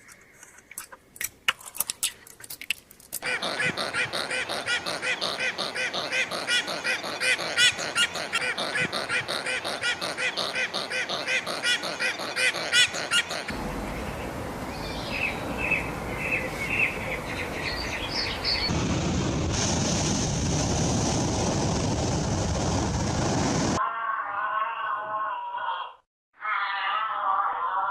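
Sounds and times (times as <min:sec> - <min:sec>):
waterfowl calling rapidly: 0:03.2 - 0:18.7.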